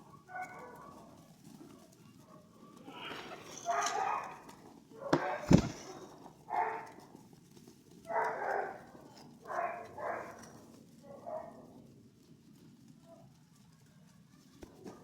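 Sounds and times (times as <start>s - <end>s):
pigeons cooing: 2.5s - 6.1s.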